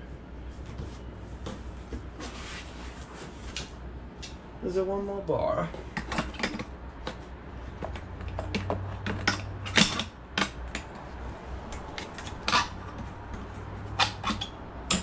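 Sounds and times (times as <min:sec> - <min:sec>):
metal bars clicking and knocking: 0:13.9 - 0:15.0.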